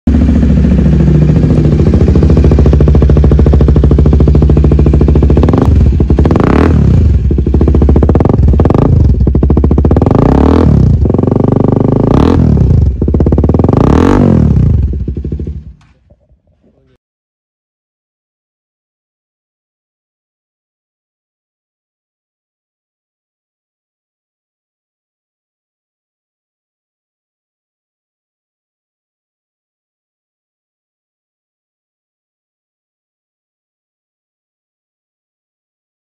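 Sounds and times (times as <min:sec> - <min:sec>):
motorcycle engine idling and revving: 0:00.1 - 0:16.4.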